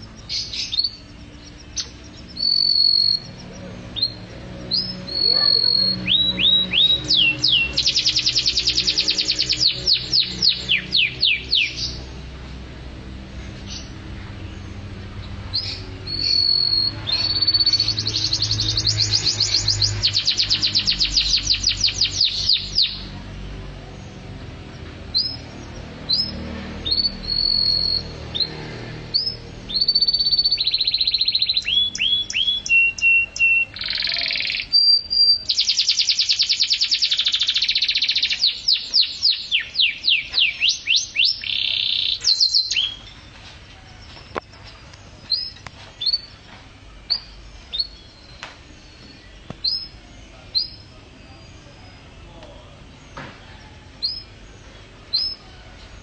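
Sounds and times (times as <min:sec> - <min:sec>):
songbird singing: 0:00.0 - 0:56.0.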